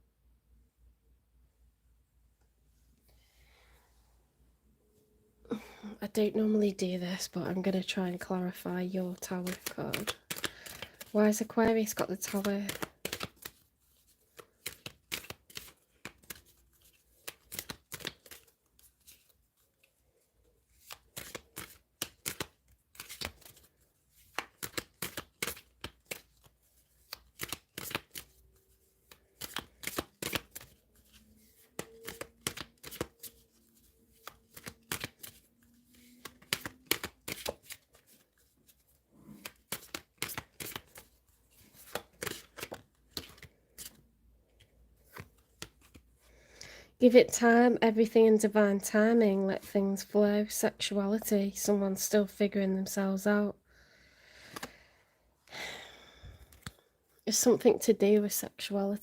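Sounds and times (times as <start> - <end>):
cards being shuffled by hand: 7.8 - 46.3, 54.5 - 54.7, 56.4 - 56.9.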